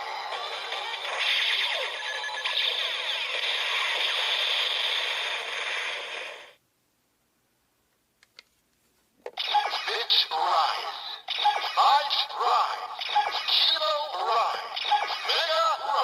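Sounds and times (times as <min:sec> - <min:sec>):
synthesized toy jingle: 0:00.0 - 0:03.8.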